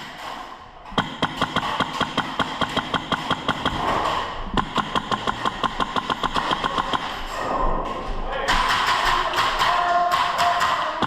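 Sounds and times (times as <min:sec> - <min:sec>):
airsoft rifle rapid fire: 0:01.0 - 0:07.2, 0:08.5 - 0:11.0.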